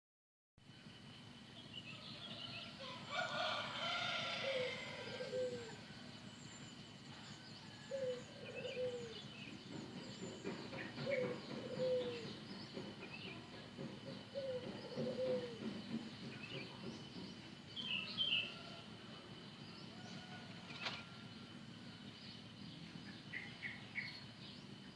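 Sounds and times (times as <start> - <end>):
small birds chirping: 0.7 - 24.9
rooster crowing: 1.9 - 6.1, 7.1 - 9.1, 17.8 - 22.0.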